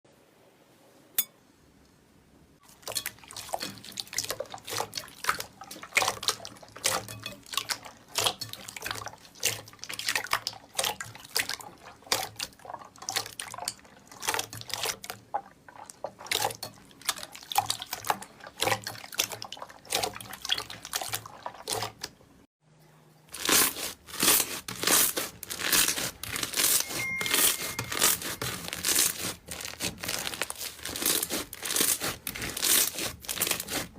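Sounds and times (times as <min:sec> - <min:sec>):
slime crackling and popping: 0:23.3 - 0:33.9.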